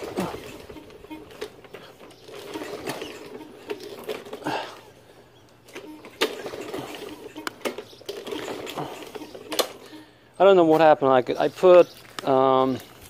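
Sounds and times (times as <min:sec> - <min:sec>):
recoil starter cord whir: 0:00.0 - 0:10.2
lawn mower engine turning over: 0:00.0 - 0:13.0
handling clicks and knocks: 0:05.6 - 0:10.0.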